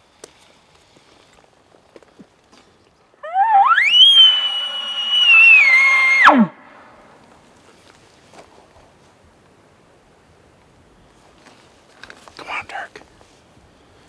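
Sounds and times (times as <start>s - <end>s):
elk bugle call whistle: 3.2s - 7.0s.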